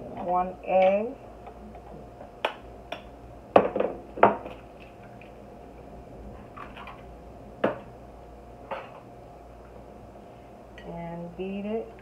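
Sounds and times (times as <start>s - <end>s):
dishes knocking and clinking: 1.7s - 4.6s.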